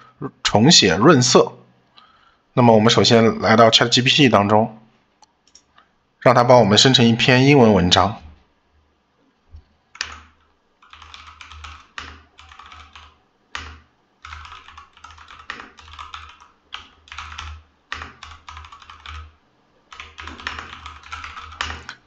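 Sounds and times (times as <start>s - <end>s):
typing on computer keyboard: 10.0s - 22.0s.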